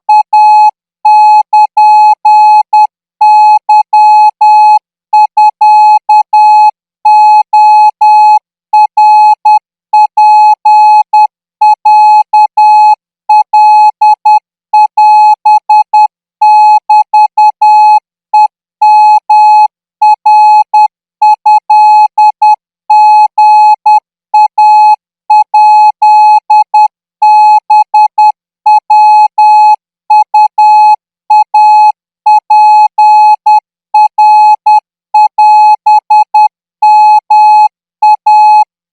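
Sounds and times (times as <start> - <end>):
morse code beeps: 15.5 - 19.1, 20.4 - 24.5, 26.6 - 31.7, 32.3 - 38.7.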